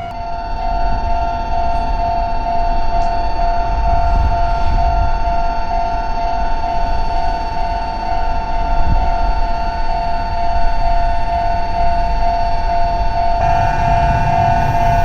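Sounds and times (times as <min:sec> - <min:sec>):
level crossing warning bell: 0:00.0 - 0:15.0
low rumble: 0:13.4 - 0:15.0.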